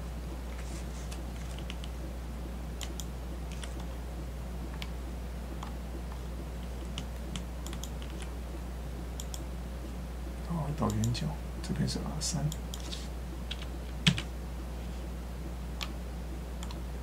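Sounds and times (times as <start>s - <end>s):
low electrical hum: 0.0s - 17.0s
mouse and keyboard clicks: 1.1s - 2.0s, 2.8s - 3.9s, 6.8s - 8.3s.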